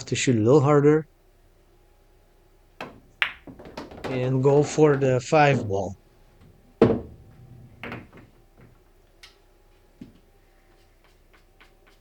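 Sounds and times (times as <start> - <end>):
faint steady hum: 0.0 - 12.0
balls knocking and thudding: 2.8 - 8.9
billiard balls clacking: 2.8 - 9.0.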